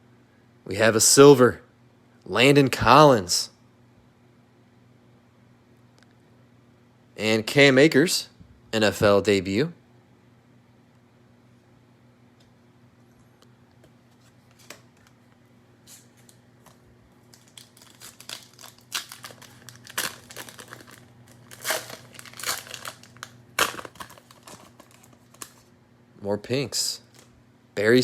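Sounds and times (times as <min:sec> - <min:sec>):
cellophane wrapper crinkling: 0:15.9 - 0:25.8.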